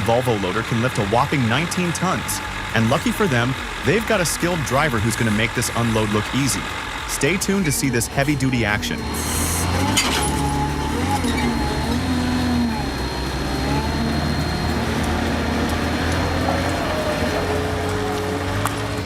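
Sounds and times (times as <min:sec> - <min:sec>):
heavy diesel engine droning: 0:00.0 - 0:19.0
faint wavering whines: 0:07.7 - 0:18.2.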